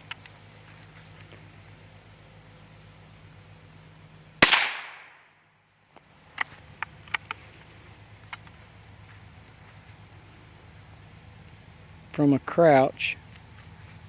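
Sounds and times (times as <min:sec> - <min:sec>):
rifle shot: 0:04.4 - 0:05.3.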